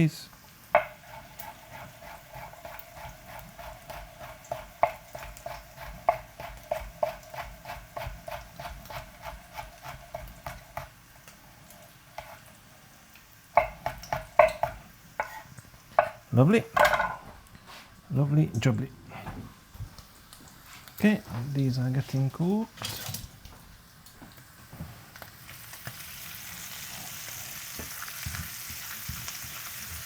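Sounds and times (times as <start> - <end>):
knife chopping on cutting board: 0.8 - 10.9, 13.6 - 15.4, 16.0 - 16.2.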